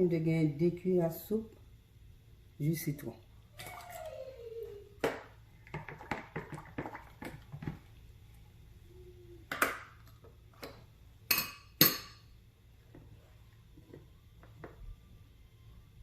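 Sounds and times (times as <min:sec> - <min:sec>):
spoon and dishes clinking: 0:11.3 - 0:12.2.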